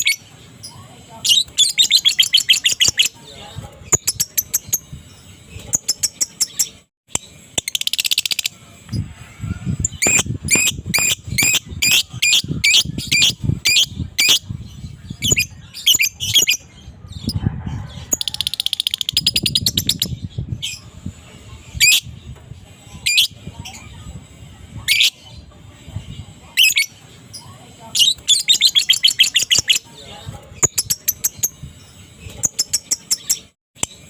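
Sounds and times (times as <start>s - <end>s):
lovebird chattering trill: 0.0s - 3.2s, 9.8s - 16.6s, 27.9s - 29.9s
lovebird chirping: 0.0s - 8.6s, 9.8s - 17.4s, 26.5s - 29.9s.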